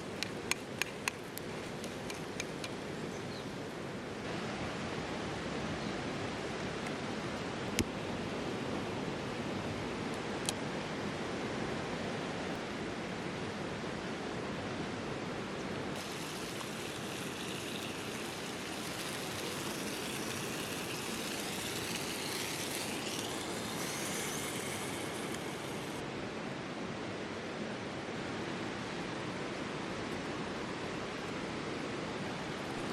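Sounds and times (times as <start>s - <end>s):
river flowing over rocks: 16.0s - 26.0s.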